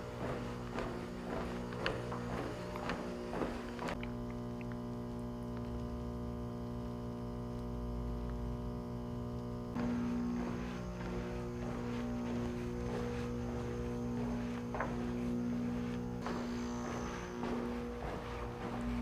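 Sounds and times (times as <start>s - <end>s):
sustained music chord: 9.8s - 19.0s.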